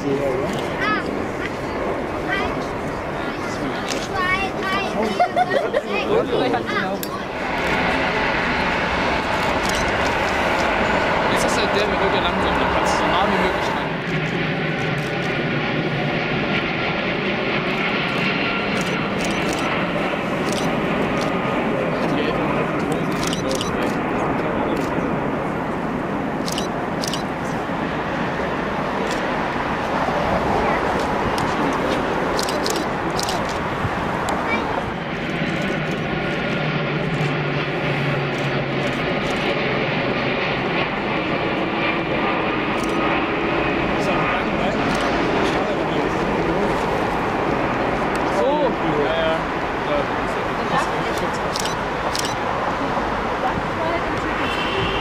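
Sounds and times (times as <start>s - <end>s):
jet engines running: 0.0s - 55.0s.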